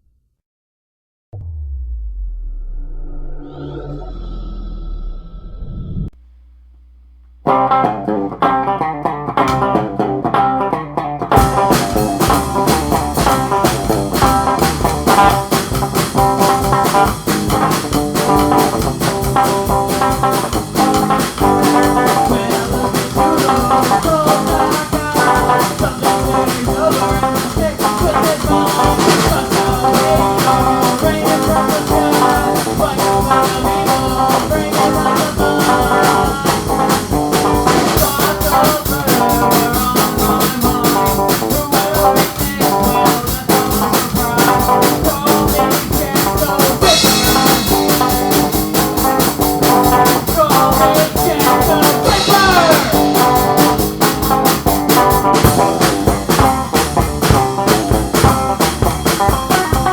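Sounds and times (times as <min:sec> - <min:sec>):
psychobilly band playing: 0:07.5 - 0:59.9
cymbals: 0:41.7 - 0:59.9.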